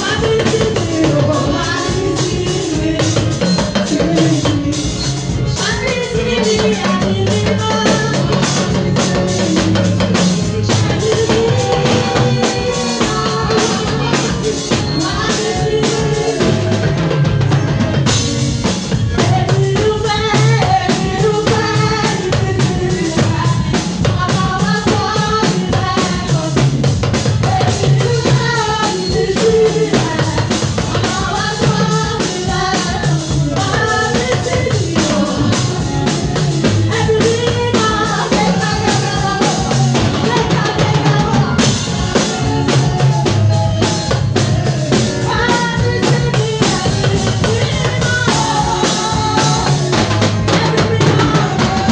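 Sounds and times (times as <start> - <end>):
drum kit beat: 0.0 - 51.9
person singing: 5.6 - 17.5, 27.4 - 51.9.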